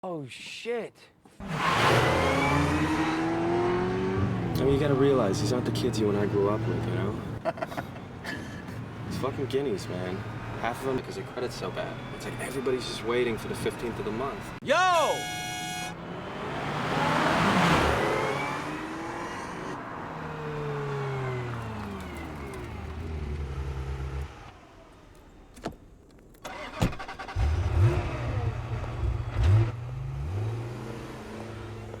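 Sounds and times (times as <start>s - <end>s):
car engine revving: 1.4s - 7.4s, 15.2s - 25.2s, 26.5s - 32.0s.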